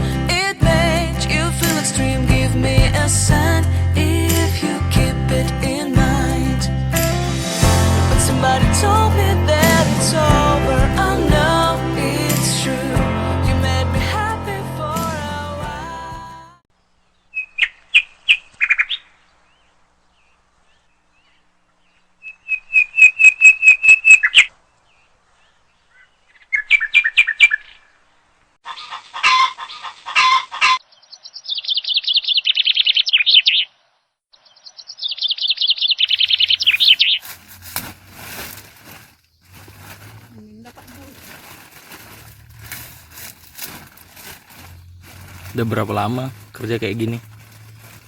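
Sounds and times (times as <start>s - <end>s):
songbird trilling and chirping: 30.7s - 33.7s, 34.3s - 37.3s
rustling: 36.1s - 48.0s.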